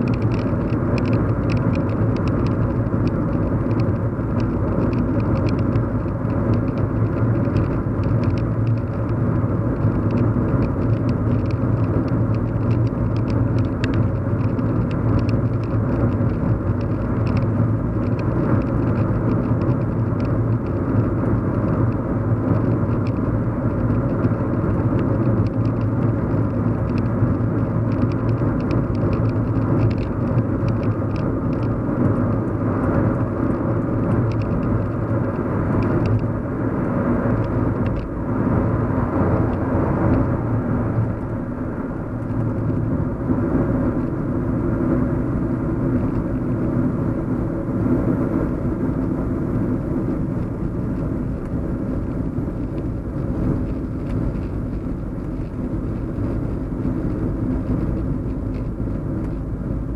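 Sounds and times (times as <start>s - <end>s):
faint ticks: 0.0s - 9.2s, 9.8s - 20.8s
car cabin road and engine noise: 0.0s - 59.9s.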